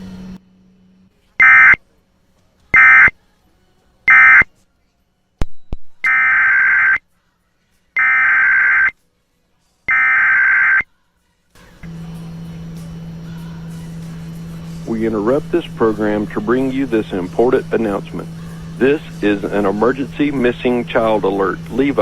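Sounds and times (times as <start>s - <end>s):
warbling digital data bursts: 6.1s - 7.0s, 8.0s - 8.9s, 9.9s - 10.8s.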